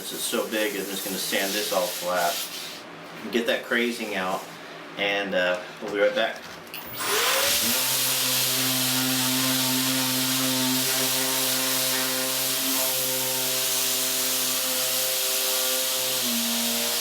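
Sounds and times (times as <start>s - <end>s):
electric sander sanding wood: 6.9s - 17.0s.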